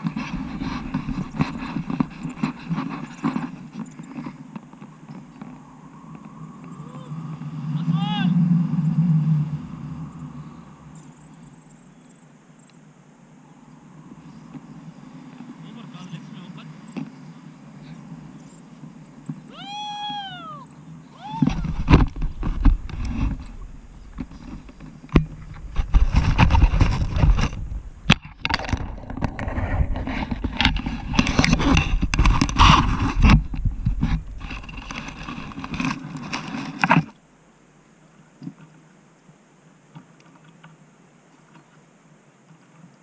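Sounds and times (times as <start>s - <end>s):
wind buffeting the microphone: 0.0s - 12.2s, 13.4s - 37.1s
short high rising and falling call: 5.5s - 12.2s, 19.4s - 21.8s.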